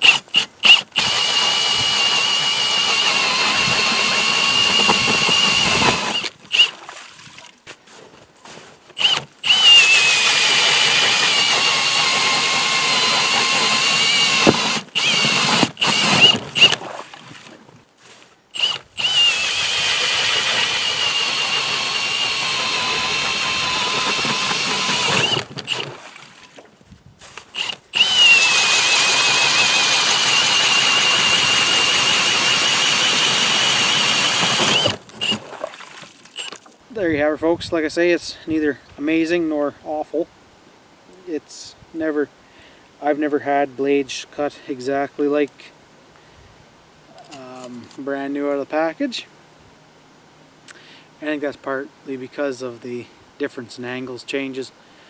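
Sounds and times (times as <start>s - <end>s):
ice auger motor whine: 0.0s - 6.7s, 9.0s - 17.5s, 18.6s - 26.0s, 27.2s - 35.6s, 36.4s - 36.6s.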